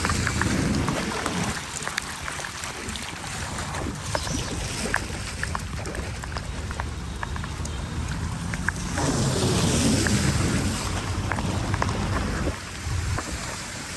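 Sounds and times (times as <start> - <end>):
floodwater splashing and trickling: 0.0 - 13.9
water drips and splashes: 0.0 - 13.9
low rumble: 3.2 - 13.6.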